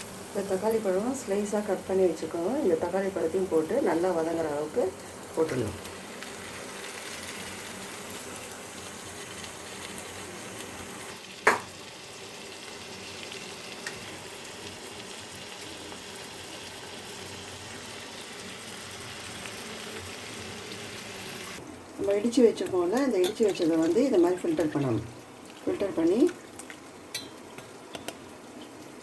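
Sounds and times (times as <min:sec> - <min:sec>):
vegetables sizzling in hot oil: 0:00.0 - 0:29.0.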